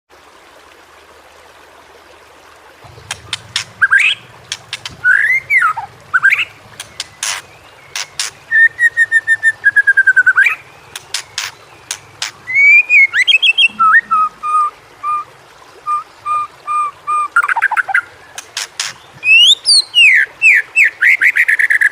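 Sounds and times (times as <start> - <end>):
sharp clicks: 3.0 - 5.4, 10.9 - 12.4
bird singing whistled phrases: 5.0 - 10.6, 12.5 - 17.9, 19.2 - 21.9.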